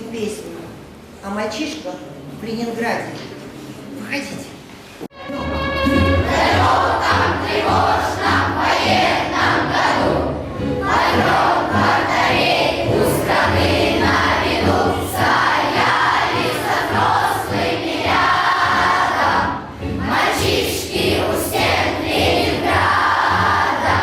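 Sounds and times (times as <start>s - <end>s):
musical accompaniment: 5.1s - 24.0s
group of voices singing: 6.2s - 24.0s.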